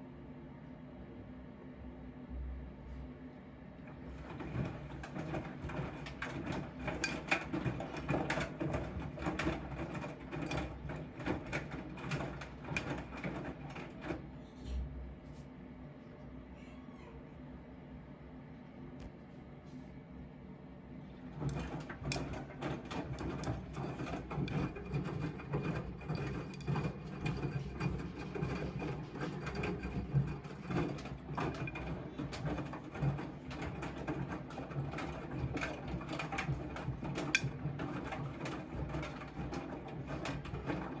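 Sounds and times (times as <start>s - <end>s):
washing machine running: 3.6s - 15.2s, 20.8s - 41.0s
clicks and rattles: 3.9s - 14.2s, 21.3s - 41.0s.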